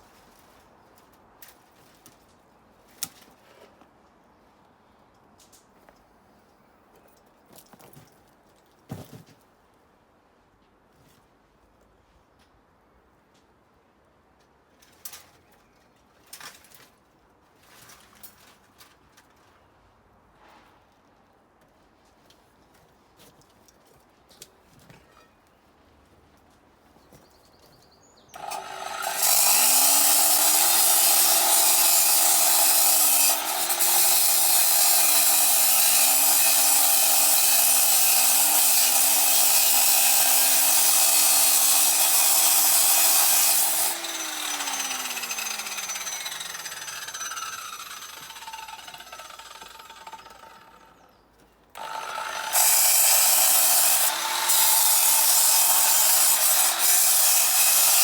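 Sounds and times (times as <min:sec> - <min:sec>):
angle grinder cutting metal: 0:28.4 - 0:50.7, 0:51.8 - 0:58.0.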